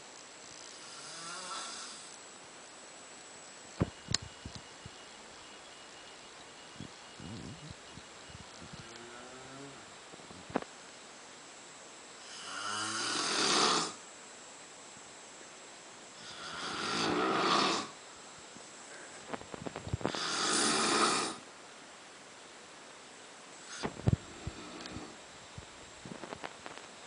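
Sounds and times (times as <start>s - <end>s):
animal snoring: 0.6s - 2.2s, 8.8s - 9.9s, 12.2s - 14.0s, 16.2s - 18.0s, 20.0s - 21.5s, 23.6s - 25.2s.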